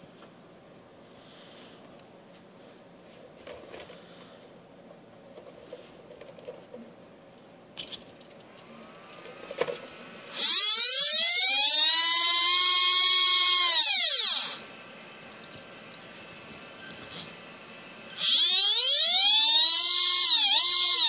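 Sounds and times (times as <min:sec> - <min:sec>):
electric motor whining: 0:08.6 - 0:14.8, 0:18.1 - 0:21.0.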